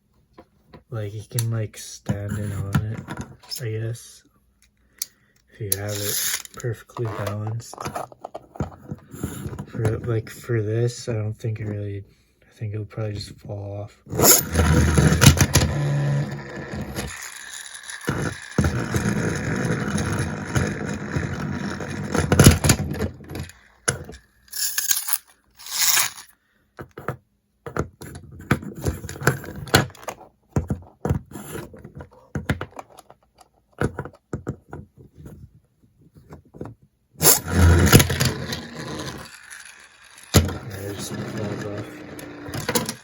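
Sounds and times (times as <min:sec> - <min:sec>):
plastic toy pieces clattering: 0:05.7 - 0:08.7, 0:14.2 - 0:26.3, 0:37.2 - 0:43.0.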